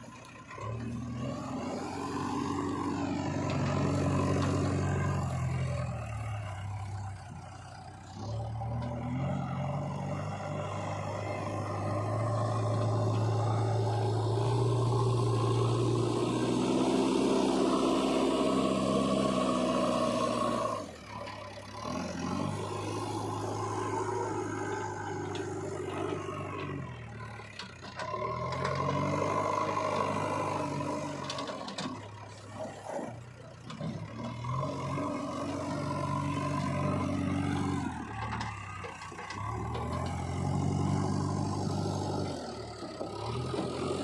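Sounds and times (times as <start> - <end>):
diesel digger engine revving: 0.0 - 44.0.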